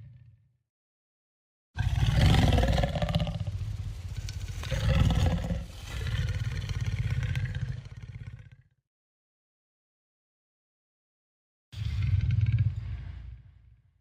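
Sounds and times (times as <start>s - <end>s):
monster roar: 1.8s - 3.5s, 4.5s - 8.0s
rough pulsing growl: 1.8s - 8.6s.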